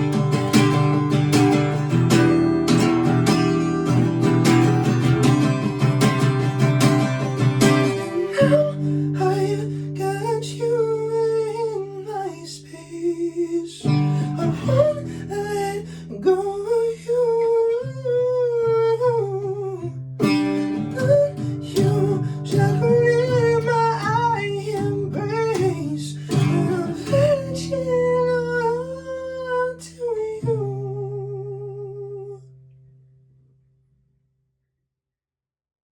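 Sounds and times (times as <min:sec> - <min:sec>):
acoustic guitar strummed: 0:00.0 - 0:33.5
person singing wordless melody: 0:07.6 - 0:20.0, 0:20.8 - 0:32.5.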